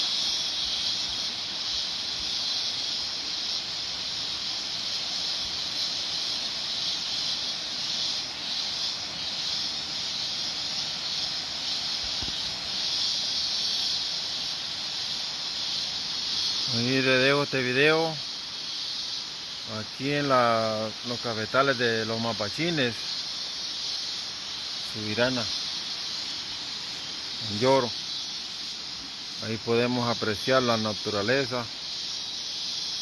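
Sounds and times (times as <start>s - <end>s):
cicadas shrilling: 0.0s - 33.0s.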